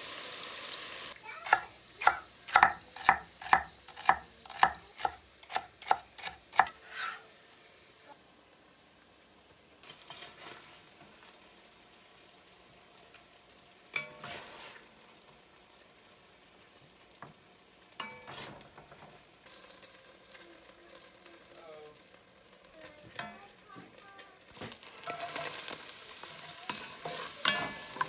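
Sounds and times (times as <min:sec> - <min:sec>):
food sizzling in a pan: 0:00.0 - 0:28.0
utensil scraping a pan: 0:01.4 - 0:07.4, 0:09.8 - 0:10.8, 0:14.0 - 0:14.9, 0:18.0 - 0:20.4, 0:24.5 - 0:28.0.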